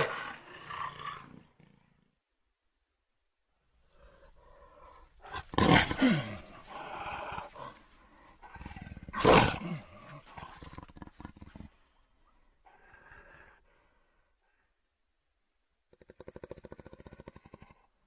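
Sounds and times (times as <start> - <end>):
rasping growls: 0.0 - 2.2, 3.8 - 11.9, 15.9 - 18.0.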